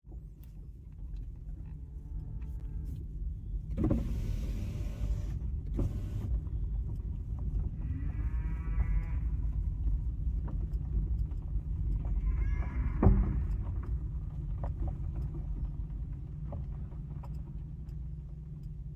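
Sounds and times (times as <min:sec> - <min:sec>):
low rumble inside car: 0:00.0 - 0:18.9
power window motor whining: 0:03.8 - 0:06.4.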